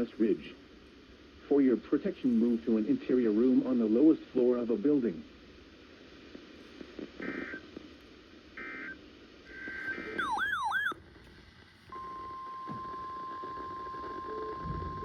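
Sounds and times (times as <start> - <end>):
data burst tones: 9.8 - 11.0
steady warning alarm tone: 10.2 - 11.0.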